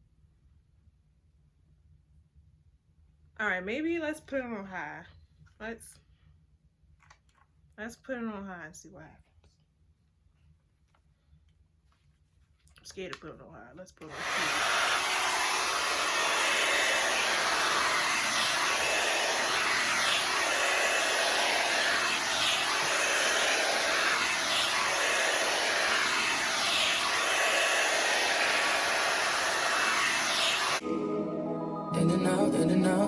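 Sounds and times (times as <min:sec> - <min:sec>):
blow dryer running: 0:14.0 - 0:30.9.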